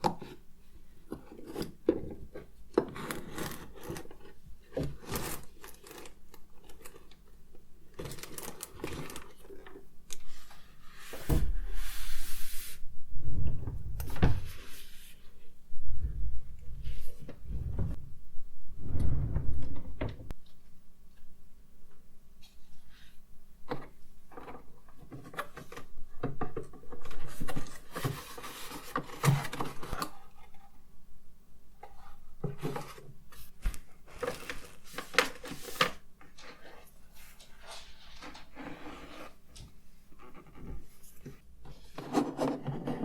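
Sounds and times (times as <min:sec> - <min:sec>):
low thumps: 0:13.0 - 0:14.5, 0:15.8 - 0:20.4.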